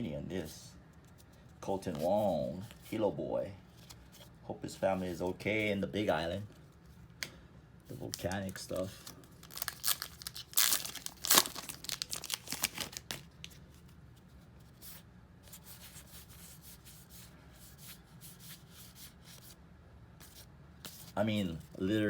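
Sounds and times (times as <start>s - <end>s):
wrapper and cards rustling: 7.9s - 14.0s
wrapper tearing and crinkling: 8.1s - 13.6s.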